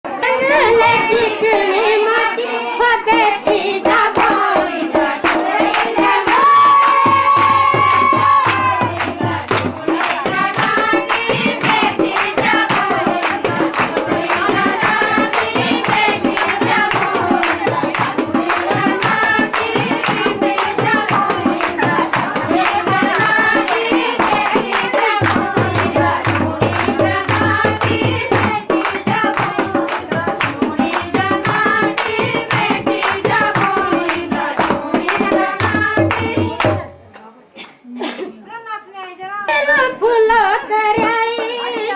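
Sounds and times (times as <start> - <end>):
person singing: 0.1 - 3.1
fast drum beat: 3.1 - 37.0.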